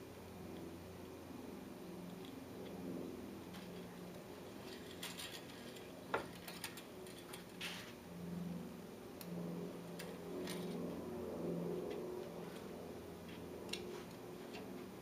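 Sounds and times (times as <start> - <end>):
faint steady hum: 0.0 - 15.0.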